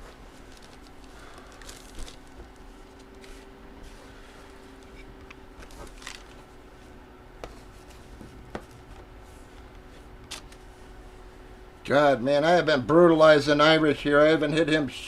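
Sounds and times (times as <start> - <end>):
hands rustling items: 0.0 - 10.7
faint steady hum: 0.0 - 15.0.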